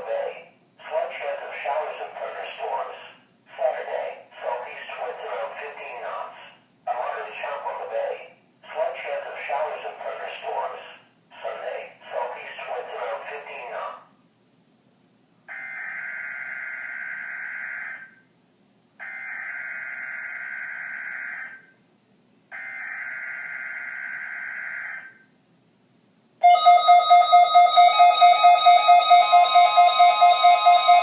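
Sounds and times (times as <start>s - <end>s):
pulsing warning alarm tone: 26.4s - 31.0s.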